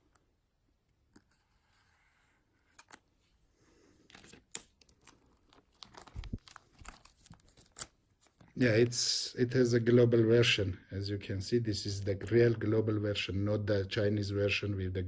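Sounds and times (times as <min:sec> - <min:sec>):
plastic wrap crinkling and tearing: 0:04.2 - 0:08.4.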